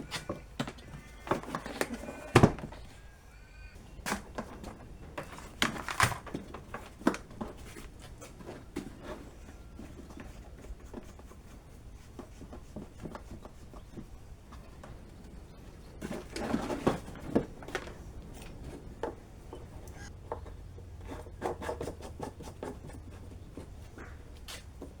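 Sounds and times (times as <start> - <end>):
knocks and clunks: 0.0 - 3.2.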